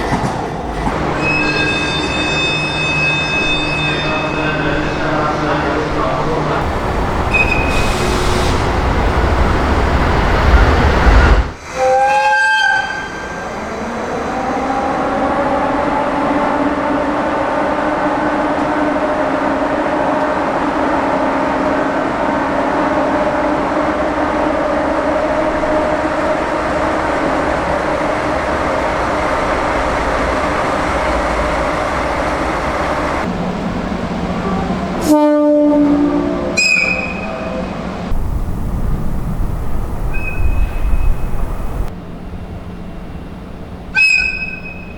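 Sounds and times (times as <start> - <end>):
train rumbling: 0.0 - 44.9
locomotive air whistle blast: 7.3 - 8.6, 11.7 - 13.3, 35.0 - 37.4, 44.0 - 44.9.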